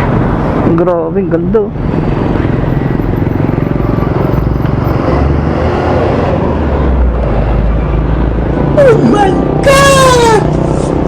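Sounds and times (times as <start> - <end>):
motorcycle engine running: 1.7 - 5.5.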